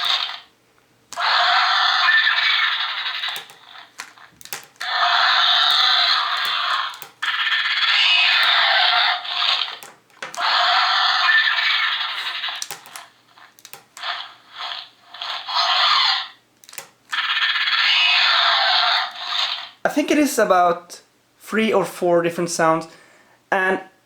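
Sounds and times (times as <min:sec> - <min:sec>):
electronic toy screeches: 0:00.0 - 0:00.5, 0:01.2 - 0:16.4, 0:17.1 - 0:19.8
sharp clicks: 0:02.4 - 0:10.8, 0:12.0 - 0:14.2, 0:16.6 - 0:17.4.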